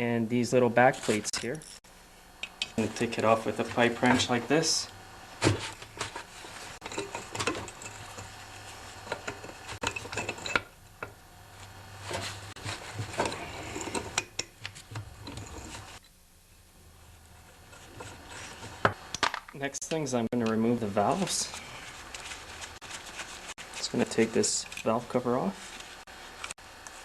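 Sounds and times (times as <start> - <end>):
low steady hum: 0.0 - 27.0
pipe wrench on metal: 6.8 - 8.3, 9.0 - 11.1, 12.9 - 16.0.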